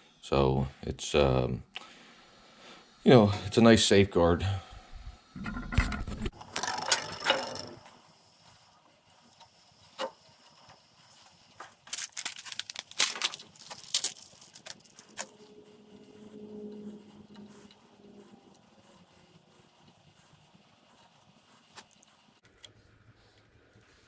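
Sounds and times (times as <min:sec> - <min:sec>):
handling noise: 0:06.3 - 0:19.1
crimping tool clicking: 0:11.7 - 0:15.5.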